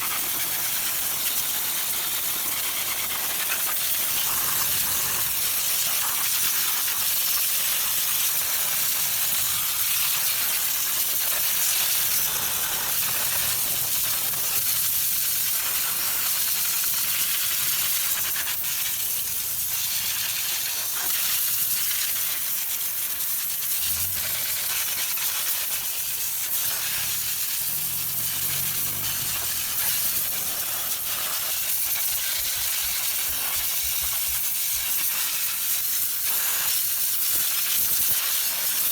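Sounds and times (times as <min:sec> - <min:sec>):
pressure spray jet hissing: 0:25.9 - 0:34.6.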